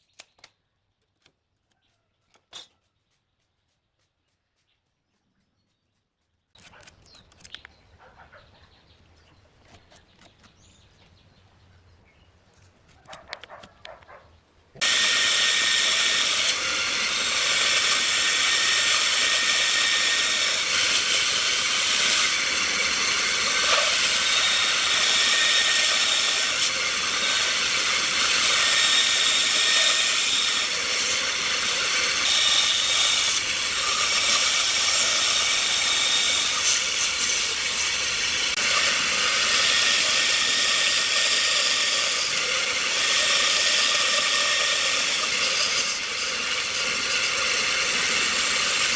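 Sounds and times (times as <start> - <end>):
tool rasping wood: 14.8 - 48.9.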